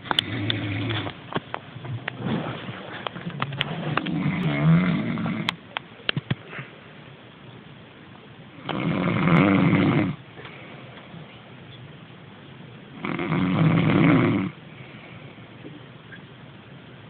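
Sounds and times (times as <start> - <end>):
man snoring loudly: 0.2 - 1.0, 4.1 - 5.5, 8.6 - 10.2, 13.0 - 14.6.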